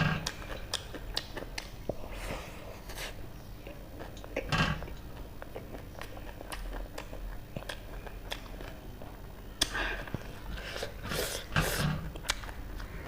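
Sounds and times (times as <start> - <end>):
wet chewing clicks: 0.2 - 2.0, 3.6 - 11.4, 12.1 - 13.0
hissy mouth noises: 9.6 - 12.1.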